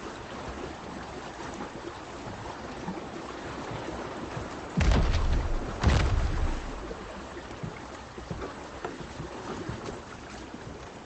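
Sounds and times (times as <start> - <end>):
water rushing past boat: 0.0 - 11.0
loud low thumps: 4.8 - 7.3.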